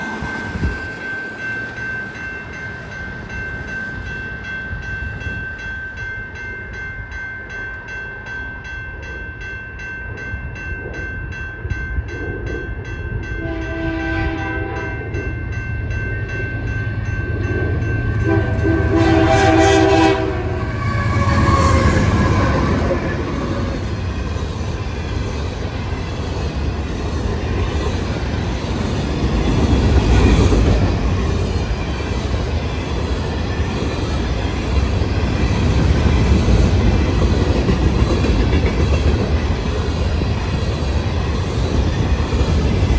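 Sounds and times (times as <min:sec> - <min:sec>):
train rumbling: 0:00.0 - 0:06.8, 0:10.2 - 0:42.9
locomotive horn blasts: 0:13.4 - 0:15.1, 0:18.2 - 0:23.8.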